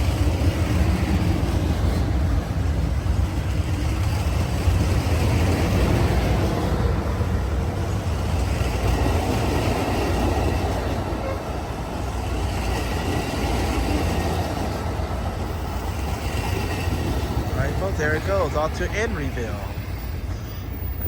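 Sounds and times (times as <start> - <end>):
passenger train rumbling past: 0.0 - 21.0
rail noise: 0.0 - 21.0.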